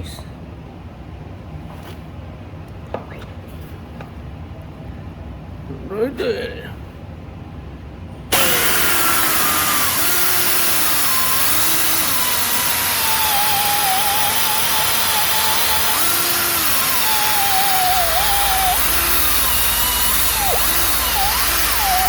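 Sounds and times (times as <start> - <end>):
power tool whine: 8.3 - 22.0.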